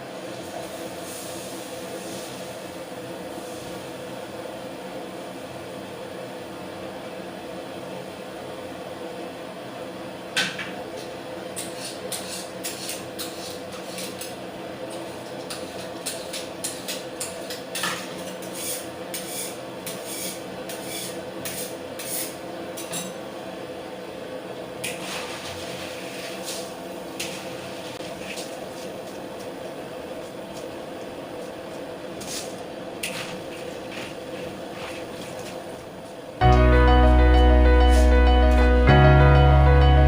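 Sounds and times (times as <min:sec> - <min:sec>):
steady hum: 0:26.7 - 0:40.0.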